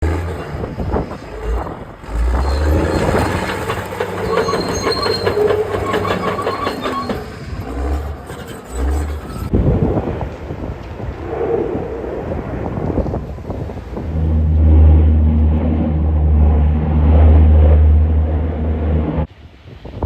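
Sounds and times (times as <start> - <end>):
bulldozer engine running: 0.0 - 9.5, 13.8 - 19.3
metallic squealing: 0.1 - 9.5.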